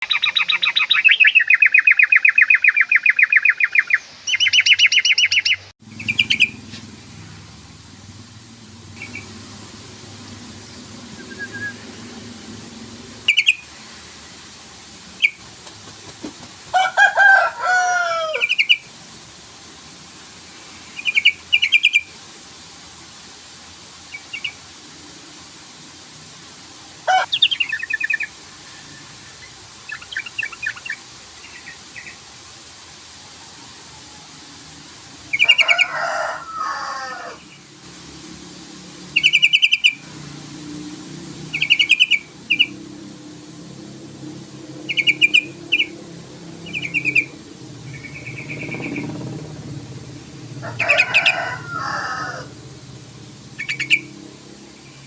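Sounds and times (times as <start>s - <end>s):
bird chattering calls: 0.0s - 6.6s, 9.0s - 9.4s, 13.2s - 13.7s, 39.2s - 40.0s, 41.5s - 42.8s, 44.9s - 46.0s, 46.6s - 49.2s, 53.6s - 54.1s.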